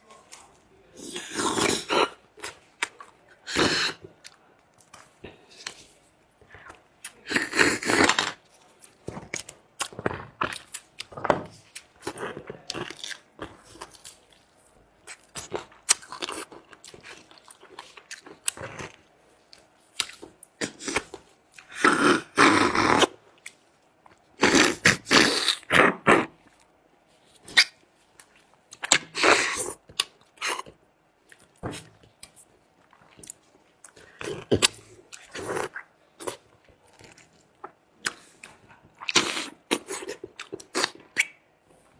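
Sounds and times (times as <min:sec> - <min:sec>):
wet slurping and gnawing: 0:33.0 - 0:41.4.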